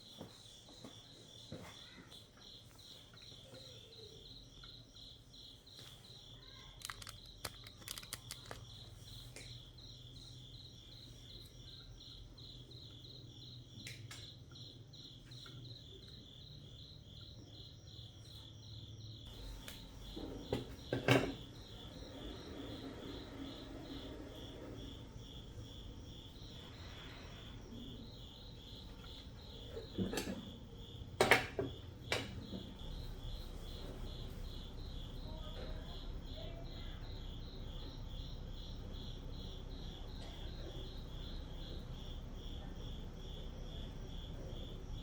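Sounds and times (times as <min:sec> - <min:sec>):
faint low hum: 0:00.0 - 0:45.0
insects chirping in a trill: 0:00.0 - 0:45.0
clicks and knocks of handling: 0:06.7 - 0:09.6, 0:29.9 - 0:30.5.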